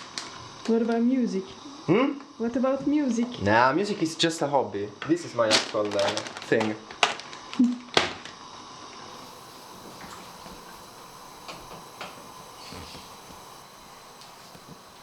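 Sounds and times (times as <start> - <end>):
faint hiss: 9.1 - 15.0.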